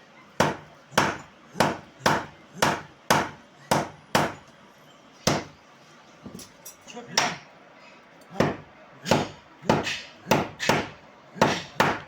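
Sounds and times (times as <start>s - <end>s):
hammer striking hot steel: 0.4s - 4.5s, 8.4s - 12.0s.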